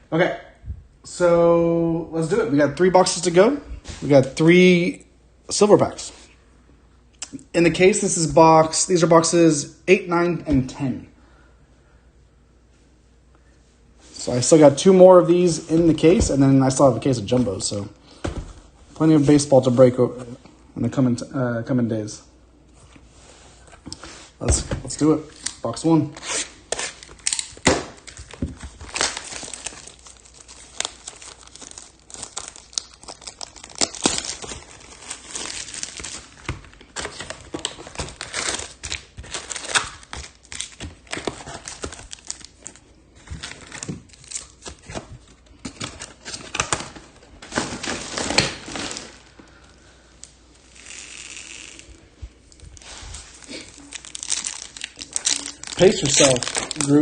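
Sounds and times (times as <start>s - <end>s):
plastic and foil wrapping crinkling: 24.9s - 57.0s.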